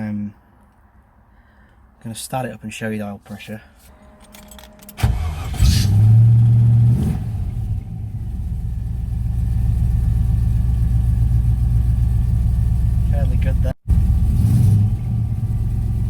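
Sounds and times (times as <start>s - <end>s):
car engine starting and idling: 3.8s - 16.0s.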